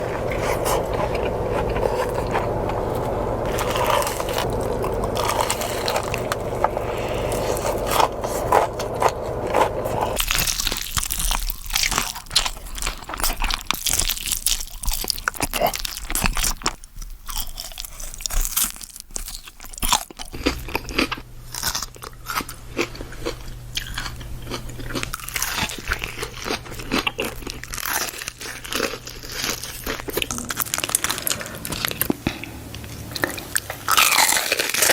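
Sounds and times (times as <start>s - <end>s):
steady low hum: 0.0s - 10.4s, 20.5s - 34.9s
crunching of fried chicken: 0.0s - 34.9s.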